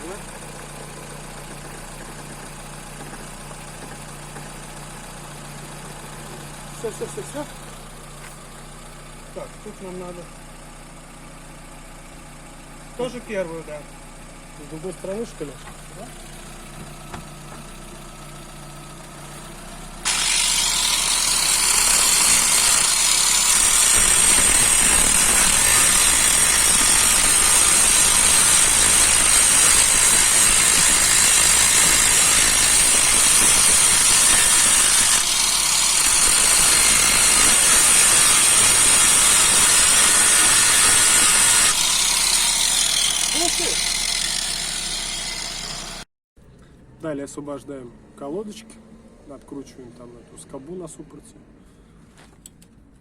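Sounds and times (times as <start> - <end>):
car engine idling: 0.0 - 31.6.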